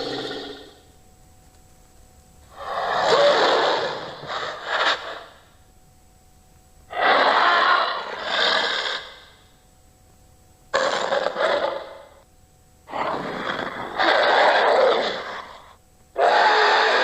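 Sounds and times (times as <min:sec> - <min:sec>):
raspy monster growls: 0:00.0 - 0:00.7, 0:02.5 - 0:04.9, 0:06.9 - 0:09.2, 0:10.8 - 0:12.1, 0:12.9 - 0:17.0.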